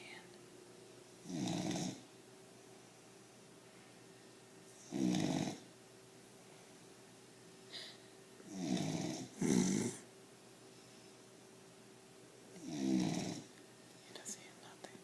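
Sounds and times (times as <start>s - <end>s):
puppy snoring: 1.2s - 2.1s, 4.8s - 5.7s, 8.4s - 10.1s, 12.6s - 13.5s.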